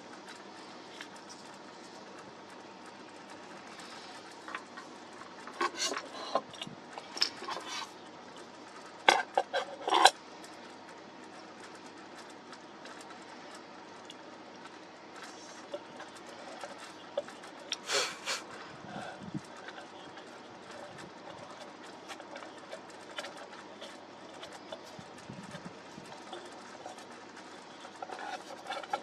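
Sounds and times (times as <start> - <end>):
hard objects clicking and knocking: 0.1 - 17.8.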